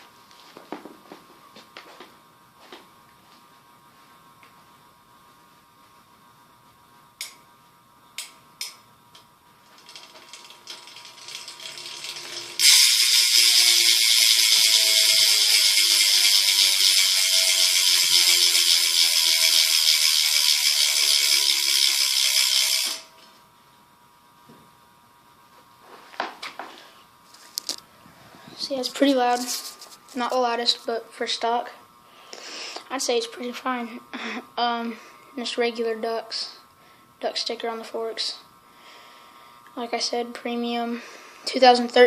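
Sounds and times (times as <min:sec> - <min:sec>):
bike hub ratcheting buzz: 0:08.2 - 0:23.2.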